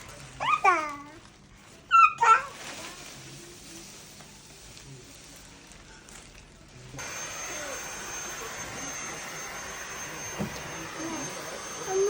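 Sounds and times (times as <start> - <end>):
vacuum cleaner running: 7.0 - 12.0.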